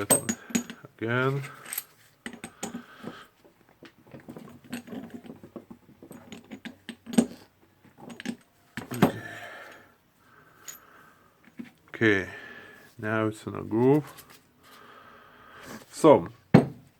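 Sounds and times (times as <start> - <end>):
small metal parts clicking and scraping: 0.0 - 3.2, 3.8 - 9.9, 10.5 - 11.7.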